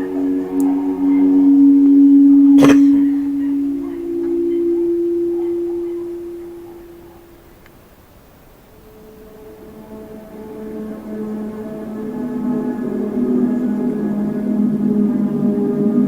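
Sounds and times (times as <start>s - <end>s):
low droning tone: 0.0s - 7.8s.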